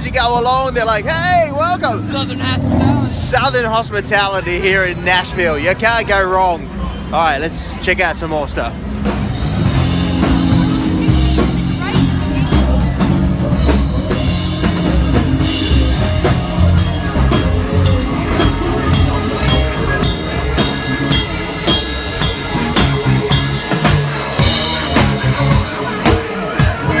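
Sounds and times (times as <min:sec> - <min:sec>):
drum kit steady beat: 0:08.9 - 0:27.0
live band music: 0:09.0 - 0:27.0.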